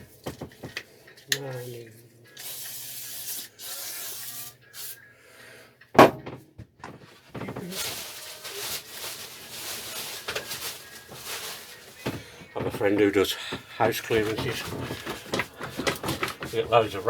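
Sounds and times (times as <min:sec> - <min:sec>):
sharp loud knock: 0:06.0 - 0:06.4.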